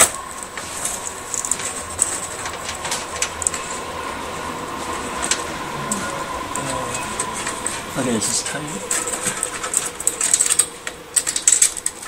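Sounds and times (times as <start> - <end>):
cables and connectors clicking: 0.0 - 4.0, 4.7 - 7.9, 8.7 - 12.0
steady thin high tone: 3.5 - 10.1.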